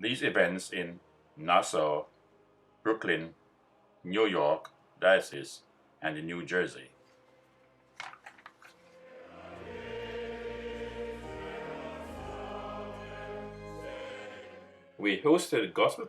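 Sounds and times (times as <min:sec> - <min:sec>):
choir singing a sustained chord: 0:08.8 - 0:15.7.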